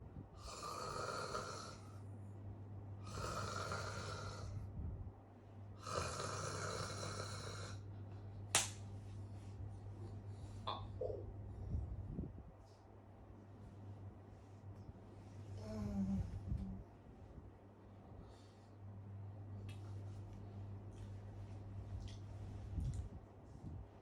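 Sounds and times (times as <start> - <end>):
person snoring loudly: 0.4 - 1.9, 3.0 - 4.6, 5.8 - 7.8.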